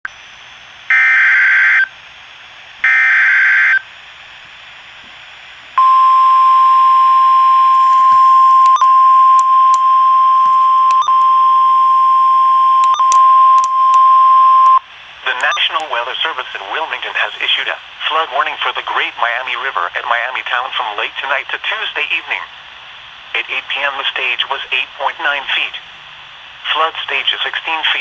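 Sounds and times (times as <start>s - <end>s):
steady warning alarm tone: 0.9s - 2.0s, 2.8s - 3.9s, 5.8s - 15.8s
static clicks: 12.8s - 16.0s.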